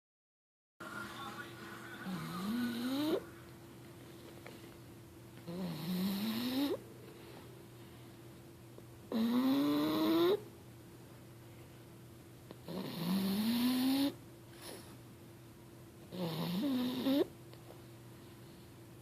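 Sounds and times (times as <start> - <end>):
person snoring: 2.0 - 3.3.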